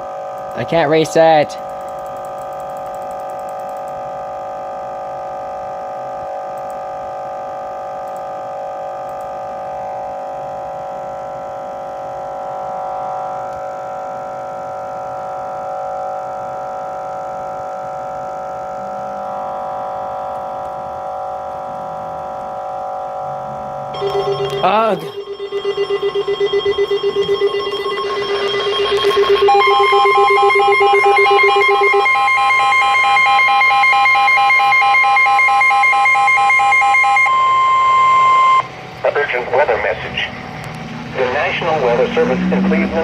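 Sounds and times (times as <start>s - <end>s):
steady electronic drone: 20.9s - 39.0s.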